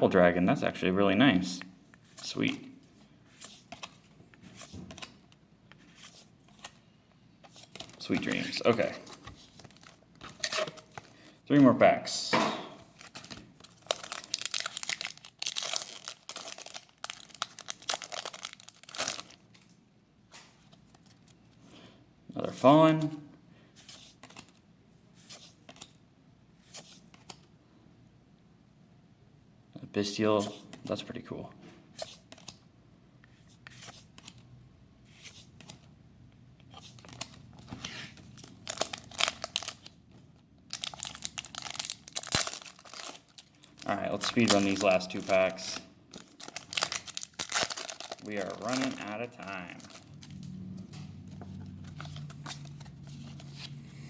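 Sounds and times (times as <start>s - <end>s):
foil wrapper tearing and crinkling: 13.0s - 19.4s, 38.4s - 39.9s, 40.7s - 50.4s.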